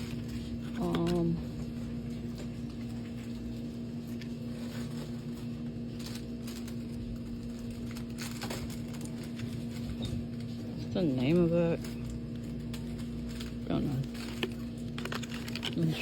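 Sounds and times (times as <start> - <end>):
low electrical hum: 0.0 - 16.0
plastic packages clicking: 4.1 - 10.6, 11.3 - 16.0.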